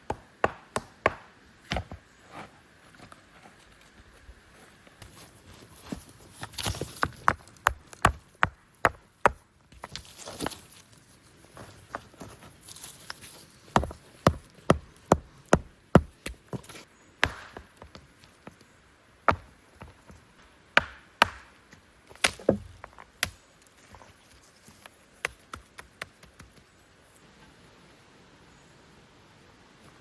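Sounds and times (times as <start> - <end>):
wood being chopped: 0.0 - 2.0, 13.8 - 16.5, 17.2 - 18.0, 20.8 - 21.5, 22.1 - 23.4.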